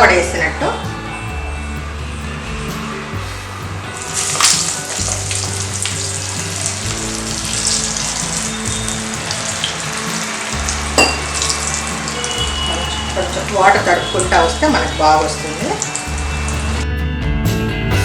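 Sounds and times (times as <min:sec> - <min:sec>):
food sizzling in hot oil: 0:03.2 - 0:16.8.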